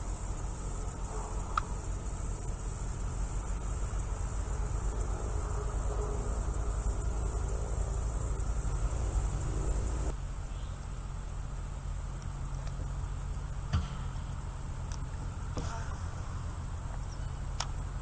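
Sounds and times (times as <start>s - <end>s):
low rumble: 0.0s - 10.2s
insect chorus: 0.0s - 18.0s.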